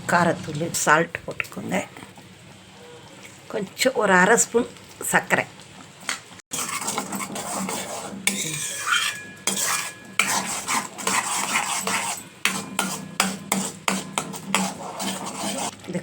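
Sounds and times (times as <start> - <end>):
spoon scraping and clinking a pan: 6.5 - 15.7.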